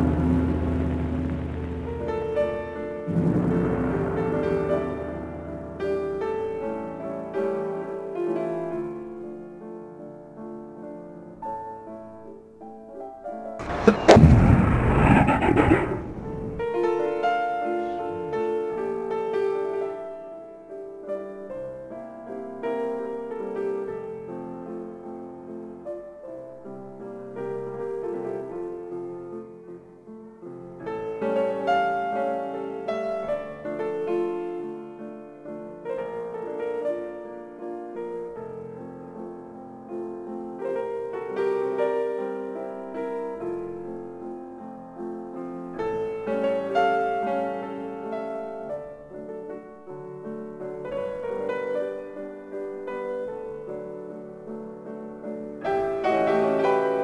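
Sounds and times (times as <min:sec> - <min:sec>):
piano music: 0:00.0 - 0:12.9, 0:32.2 - 0:57.0.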